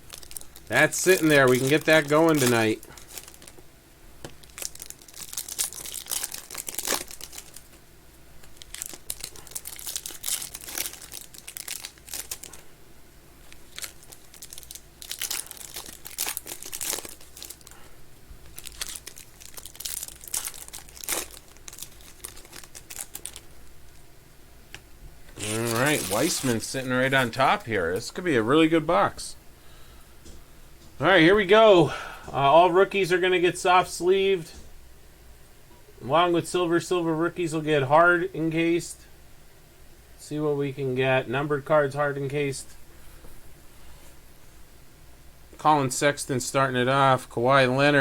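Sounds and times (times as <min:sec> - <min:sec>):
card pack wrappers crinkling: 0:00.0 - 0:03.6, 0:04.2 - 0:07.8, 0:08.4 - 0:12.7, 0:13.4 - 0:24.0, 0:25.3 - 0:28.3.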